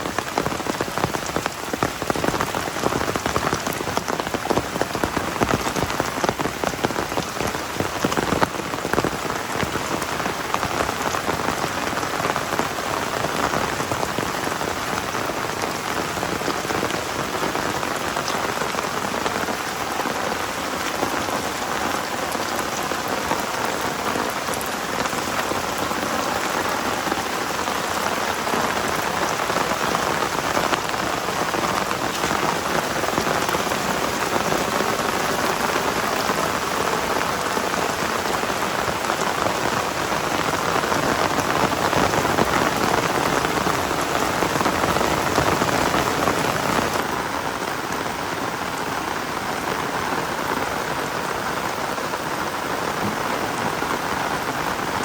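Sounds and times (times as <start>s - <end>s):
heavy rain: 0.0s - 55.0s.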